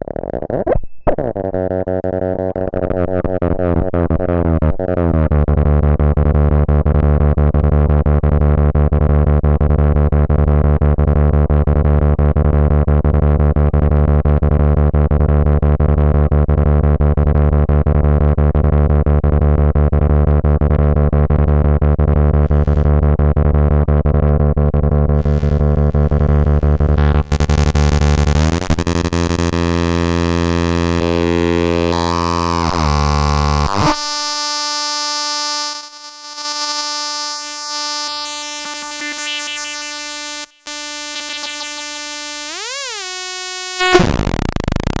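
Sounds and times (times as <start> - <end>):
buzzy electronic drone: 21.6 - 24.2, 24.8 - 45.0.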